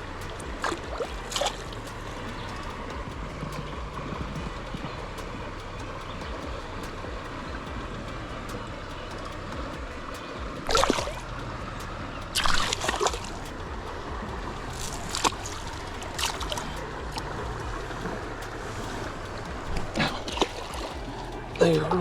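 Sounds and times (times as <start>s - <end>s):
creek water running: 0.0s - 22.0s
short sharp splashes: 0.0s - 22.0s.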